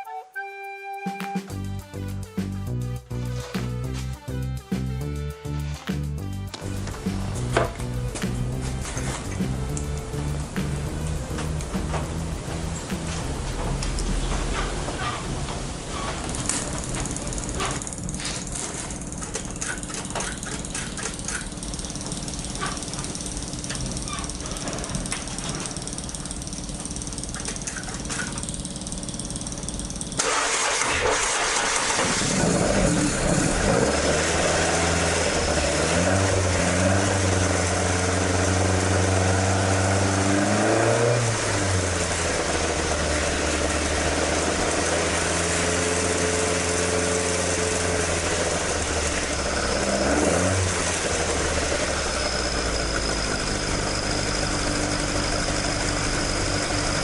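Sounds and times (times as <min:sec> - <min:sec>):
car engine starting and idling: 0:05.3 - 0:57.0
engine revving: 0:05.6 - 0:15.4, 0:29.4 - 0:57.0.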